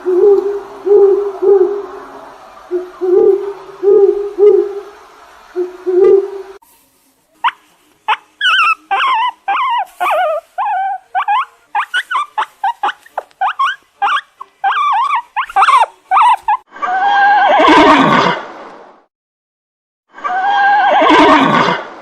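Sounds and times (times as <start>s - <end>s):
animal yelping calls: 7.4s - 18.4s, 20.2s - 21.8s
harsh falling animal call: 8.1s - 18.4s, 20.2s - 21.8s.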